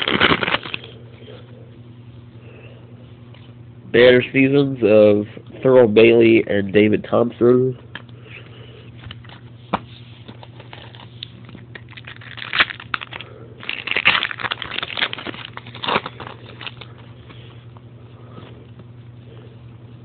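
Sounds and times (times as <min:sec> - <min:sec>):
cards rustling: 0:00.0 - 0:01.0, 0:09.0 - 0:17.5.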